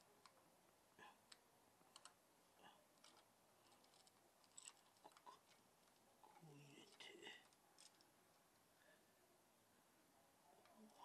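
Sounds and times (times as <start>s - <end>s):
small metal parts clicking: 3.0s - 6.0s, 6.9s - 8.1s.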